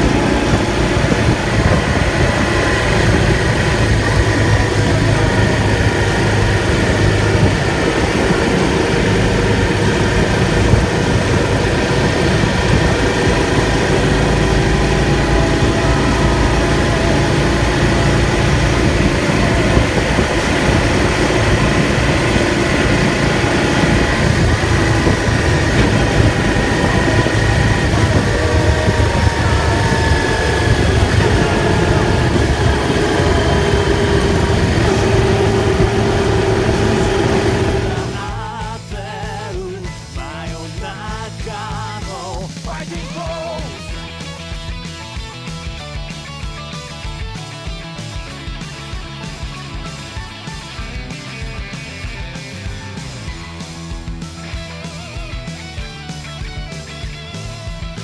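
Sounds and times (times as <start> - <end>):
faint drifting tones: 0.0 - 38.7
motorcycle engine running: 0.0 - 58.0.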